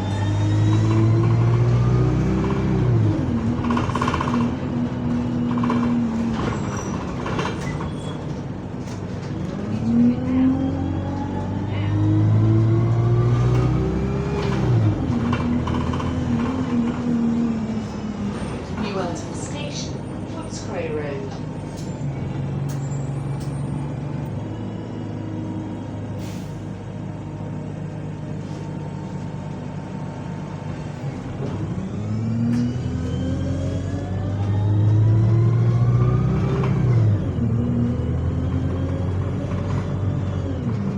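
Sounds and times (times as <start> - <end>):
bus engine drone: 0.0 - 40.9.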